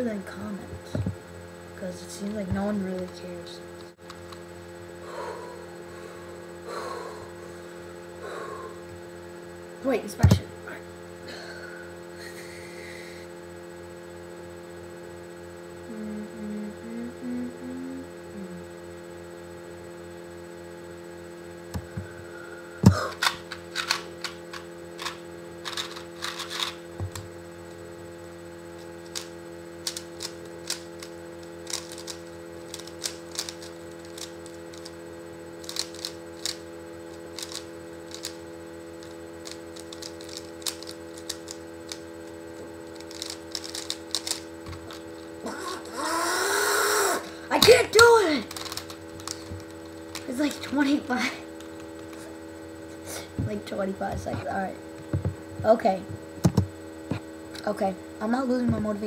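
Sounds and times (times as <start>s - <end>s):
steady electrical hum: 0.0s - 59.0s
plastic puzzle cube clicking: 29.1s - 34.9s, 35.6s - 36.6s, 37.4s - 38.4s, 39.0s - 42.0s, 43.0s - 44.4s.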